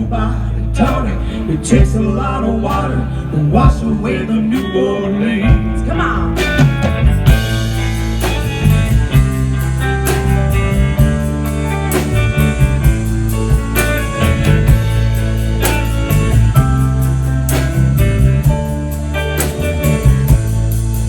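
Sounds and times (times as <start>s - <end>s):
bass guitar: 0.0s - 21.0s
electric guitar: 0.0s - 21.0s
drum kit: 5.4s - 21.0s.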